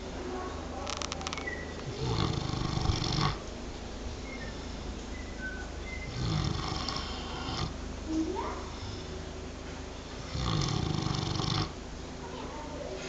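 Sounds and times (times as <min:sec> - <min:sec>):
pig snoring: 0:01.8 - 0:03.4, 0:06.0 - 0:07.8, 0:10.2 - 0:11.8.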